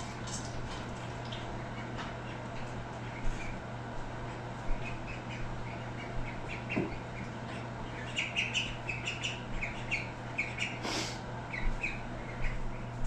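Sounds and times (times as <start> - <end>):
steady low hum: 0.0 - 13.0
birds chirping: 4.7 - 12.9.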